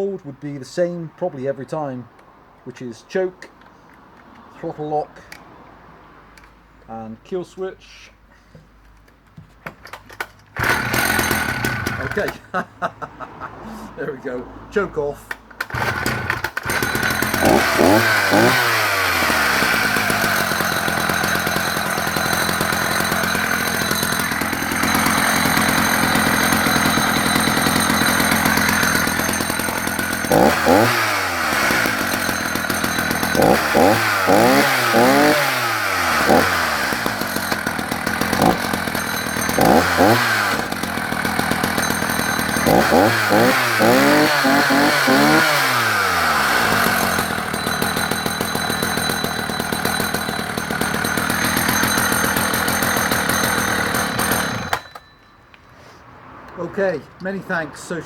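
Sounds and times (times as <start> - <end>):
chainsaw idling and revving: 10.5 - 12.6, 15.6 - 55.1.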